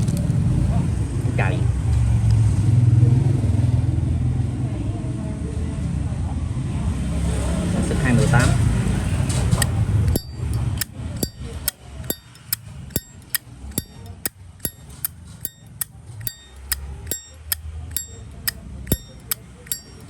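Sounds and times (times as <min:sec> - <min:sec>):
lighter lid clicking open and shut: 0:10.2 - 0:18.1, 0:18.9 - 0:20.0.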